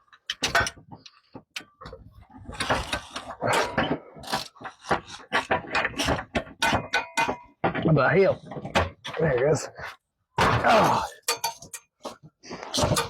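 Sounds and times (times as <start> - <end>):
hand tools clattering on metal: 3.3 - 9.6, 10.4 - 13.0.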